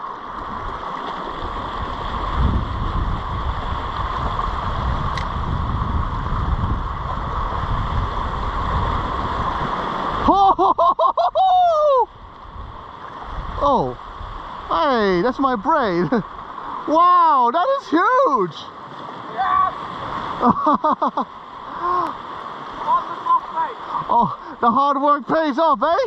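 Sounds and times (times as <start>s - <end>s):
sea washing against rocks: 0.4s - 10.3s, 16.8s - 20.5s, 21.7s - 24.6s
wind buffeting microphone: 1.4s - 10.3s, 12.2s - 15.3s
person making excited sounds: 10.3s - 12.1s, 19.4s - 19.8s.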